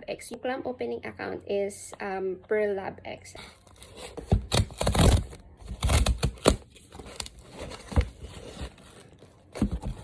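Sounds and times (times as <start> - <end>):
packaging tearing and rustling: 3.6 - 10.0.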